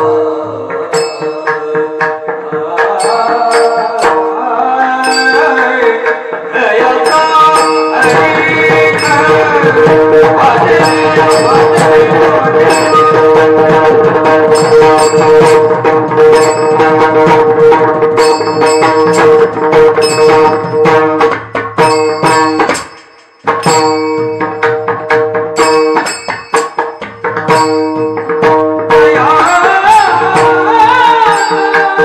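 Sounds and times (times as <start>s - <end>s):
person singing: 0.0s - 21.0s, 28.8s - 32.0s
hand drum rhythm: 0.0s - 32.0s
metallic cymbal rings: 0.9s - 2.3s, 2.9s - 4.4s, 5.0s - 6.4s, 7.0s - 32.0s.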